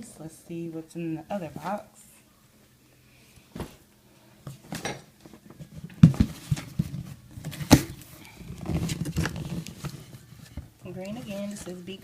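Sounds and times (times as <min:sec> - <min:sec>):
packaging rustling: 0:05.4 - 0:12.0.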